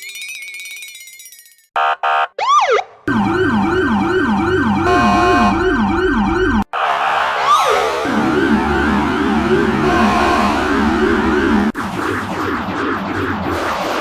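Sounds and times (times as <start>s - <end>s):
police siren blips: 1.8s - 11.8s
echoing layered siren: 1.9s - 12.5s
wailing siren: 2.4s - 11.8s.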